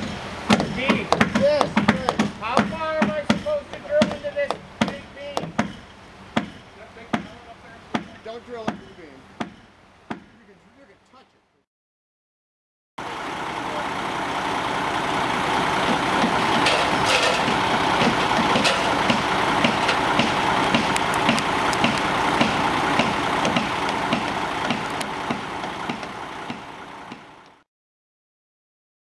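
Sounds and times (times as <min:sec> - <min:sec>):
large engine running: 0:00.0 - 0:07.9, 0:13.0 - 0:27.6
sharp clicks and knocks: 0:00.5 - 0:06.6, 0:15.8 - 0:27.6.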